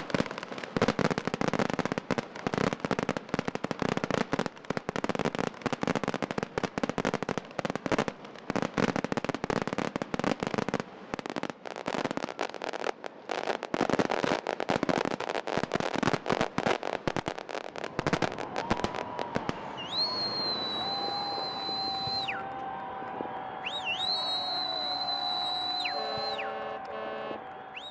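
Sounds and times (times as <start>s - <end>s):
fireworks crackling and popping: 0.0s - 27.9s
steady high whistle: 18.9s - 27.9s.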